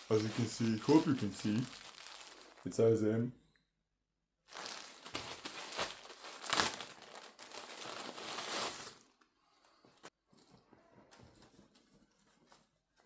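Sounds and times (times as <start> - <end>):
packaging bag crinkling: 0.0 - 2.7, 4.5 - 9.2.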